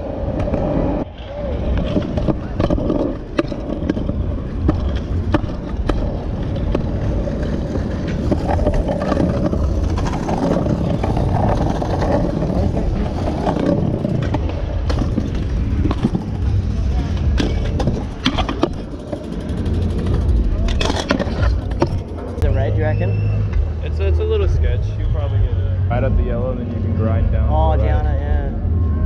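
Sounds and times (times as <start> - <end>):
scooter wheels rolling on concrete: 0.0 - 22.6.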